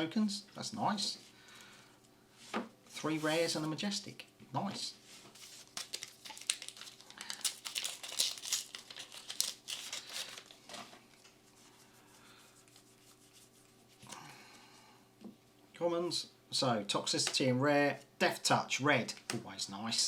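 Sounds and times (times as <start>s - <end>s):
foil pack crinkling and tearing: 5.4s - 10.6s.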